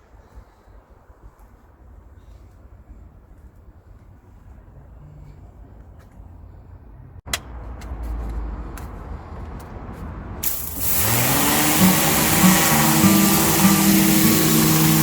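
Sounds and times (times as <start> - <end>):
pressure washer spraying: 10.4 - 15.0.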